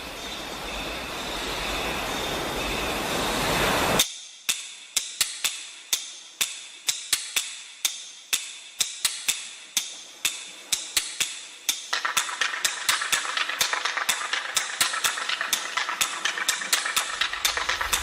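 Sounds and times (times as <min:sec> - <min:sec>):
steady rushing noise: 0:00.0 - 0:04.0, 0:11.9 - 0:18.0.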